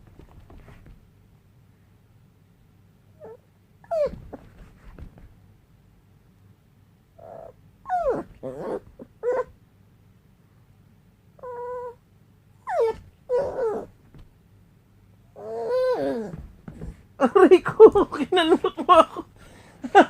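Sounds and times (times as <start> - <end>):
dog whining: 3.2 - 4.5, 7.2 - 9.6, 11.4 - 12.0, 12.6 - 14.0, 15.4 - 16.9.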